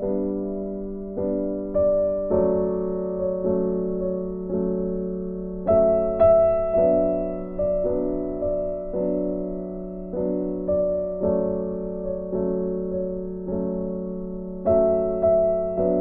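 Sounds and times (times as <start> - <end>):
soft piano chords and notes: 0.0 - 16.0.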